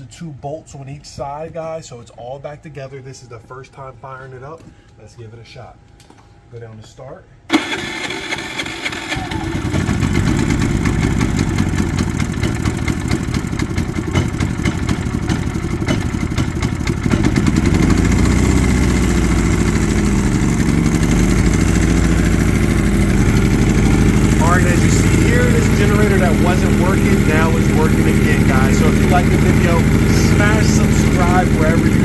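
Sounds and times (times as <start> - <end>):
generator engine running: 7.5 - 32.0.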